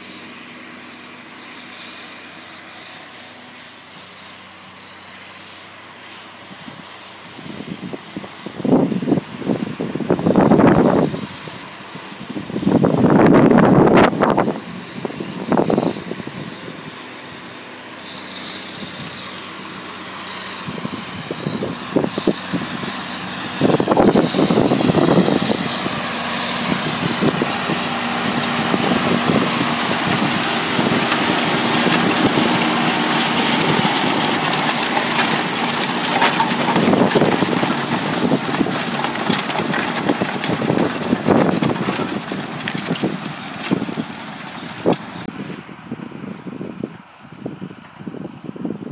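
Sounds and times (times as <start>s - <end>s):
tractor engine running: 0.0s - 46.7s
wind buffeting microphone: 6.6s - 17.0s, 20.2s - 48.9s.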